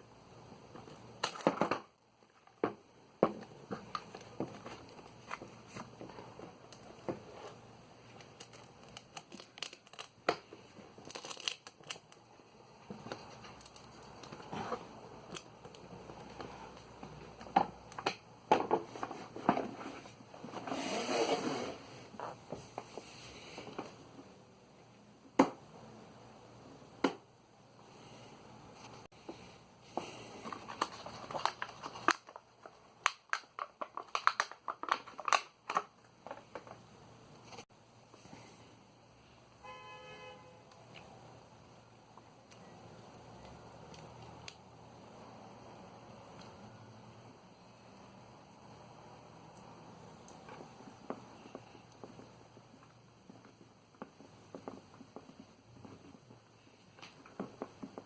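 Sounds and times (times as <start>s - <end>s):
crinkling and rustling: 0.7s - 24.0s, 28.8s - 38.4s.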